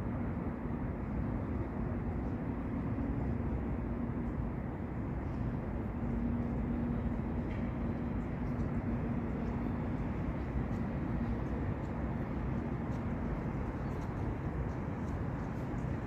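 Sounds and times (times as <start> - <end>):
faint hum: 0.0 - 16.0
low outdoor rumble: 0.0 - 16.0.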